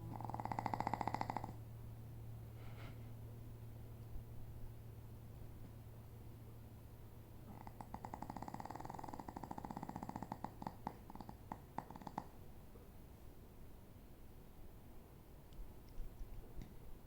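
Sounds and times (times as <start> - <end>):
snore with fluttering rattle: 0.0 - 1.6, 7.5 - 12.4.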